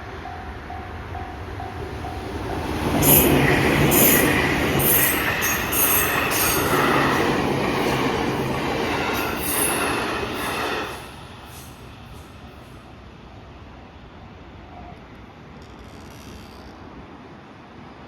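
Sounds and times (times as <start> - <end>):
train wheels running over rails: 0.8 - 12.7.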